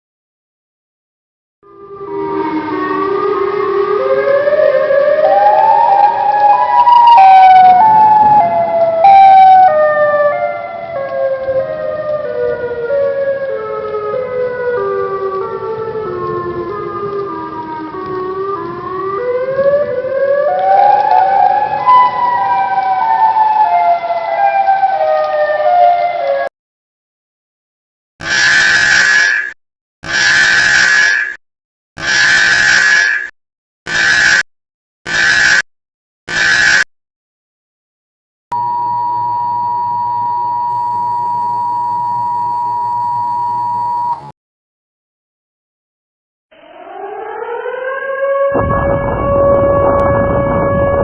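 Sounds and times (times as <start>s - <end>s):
siren wailing: 1.6s - 26.5s, 28.2s - 29.4s, 30.0s - 31.4s, 33.9s - 34.4s, 35.1s - 35.6s, 36.3s - 36.9s, 38.5s - 44.3s, 46.5s - 51.0s.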